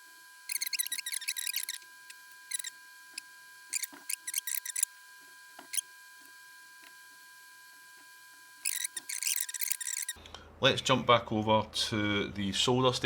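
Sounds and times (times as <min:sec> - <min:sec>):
faint high whine: 0:00.0 - 0:12.8
small parts clicking and rustling: 0:00.5 - 0:04.9, 0:08.6 - 0:10.2.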